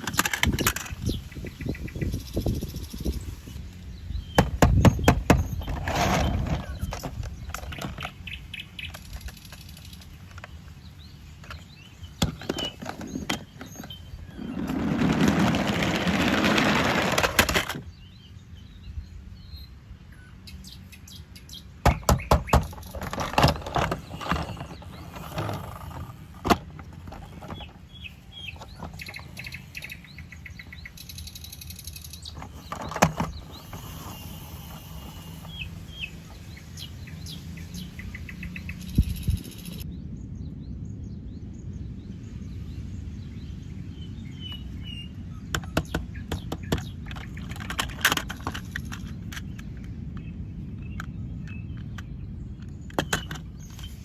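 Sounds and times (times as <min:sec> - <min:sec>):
plastic toys clicking and knocking: 0:00.0 - 0:01.1, 0:21.9 - 0:27.8, 0:45.6 - 0:49.7
birds chirping faintly: 0:00.0 - 0:54.0.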